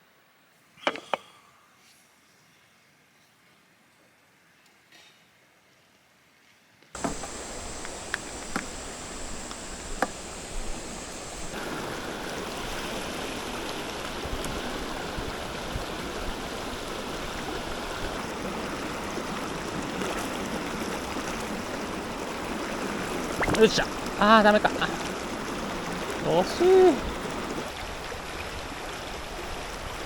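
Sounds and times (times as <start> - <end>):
thin high steady tone: 7.0 - 12.5
stream flowing over rocks: 7.0 - 30.0.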